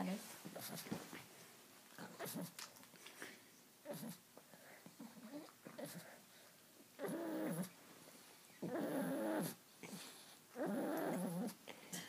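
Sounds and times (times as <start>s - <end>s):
dog wavering vocal noise: 7.0s - 7.7s.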